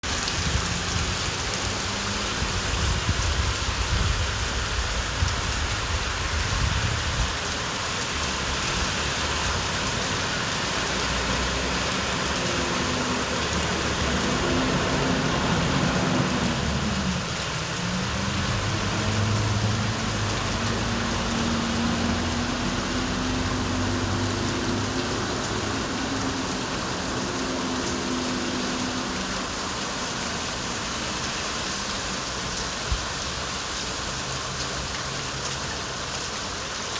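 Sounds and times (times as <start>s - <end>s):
rain falling: 0.0s - 36.9s
traffic passing: 0.0s - 36.9s
vehicle engine hum: 7.5s - 32.6s.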